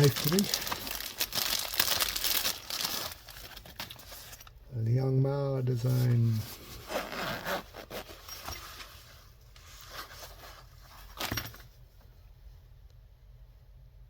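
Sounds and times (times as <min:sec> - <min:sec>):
packaging rustling and scraping: 0:00.0 - 0:04.6, 0:05.8 - 0:11.6.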